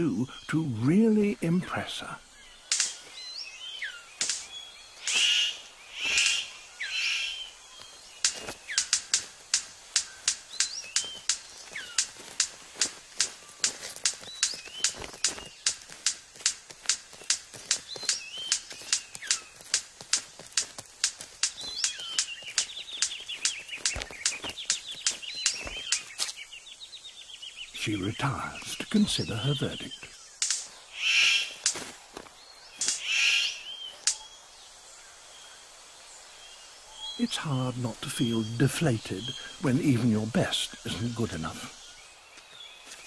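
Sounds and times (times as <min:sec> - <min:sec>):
bird harsh calls: 0:00.0 - 0:43.0
thin whistled bird calls: 0:02.2 - 0:31.8, 0:32.4 - 0:35.6
bird sharp clicks: 0:02.4 - 0:26.6, 0:27.6 - 0:34.4.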